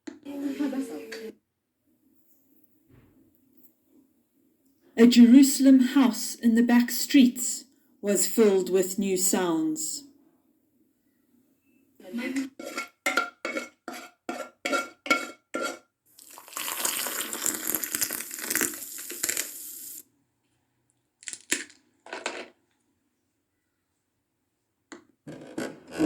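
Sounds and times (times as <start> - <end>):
dishes and cutlery clinking: 12.3 - 15.8
scraping sounds: 12.4 - 15.8.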